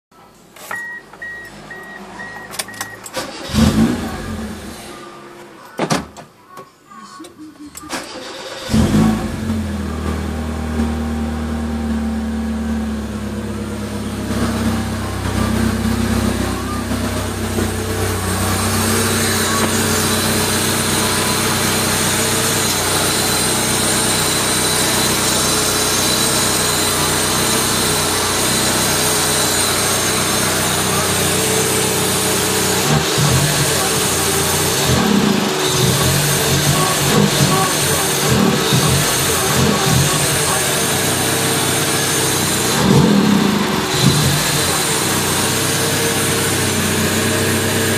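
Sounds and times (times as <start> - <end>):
car engine starting and running: 0.4 - 6.4, 7.2 - 47.9.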